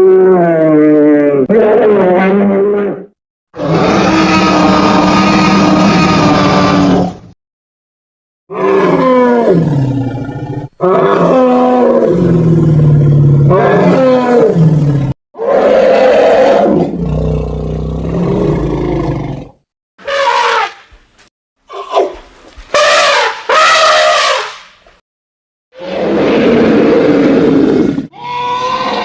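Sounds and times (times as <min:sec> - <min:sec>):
animal roar sound effects: 0:00.0 - 0:07.3, 0:08.5 - 0:21.0, 0:25.8 - 0:29.0.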